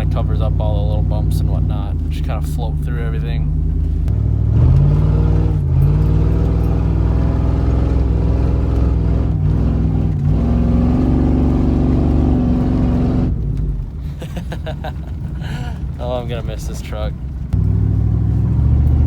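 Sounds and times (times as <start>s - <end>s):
engine revving: 0.0s - 19.0s.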